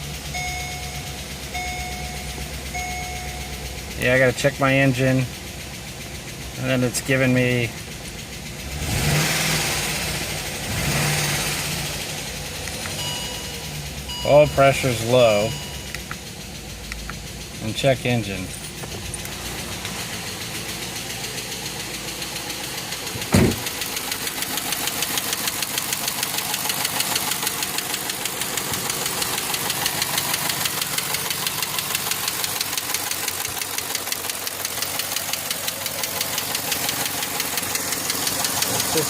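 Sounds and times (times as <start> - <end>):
car engine running: 0.0 - 39.0
fast valvetrain ticking: 0.2 - 39.0
thump: 23.2 - 23.6.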